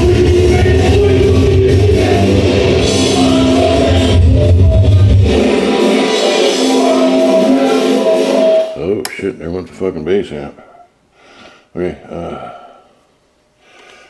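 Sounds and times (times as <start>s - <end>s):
loud rock music through car speakers: 0.0s - 8.8s.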